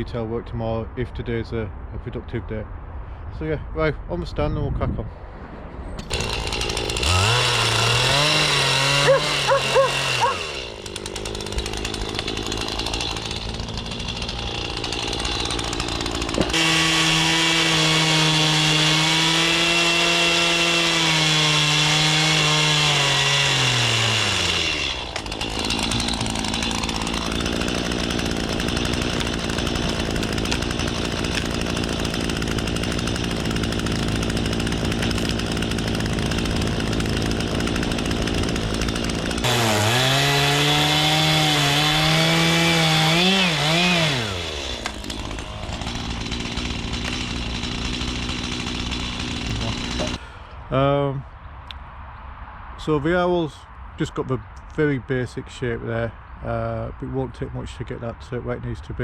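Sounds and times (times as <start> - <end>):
chainsaw cutting log: 6.0 - 50.3.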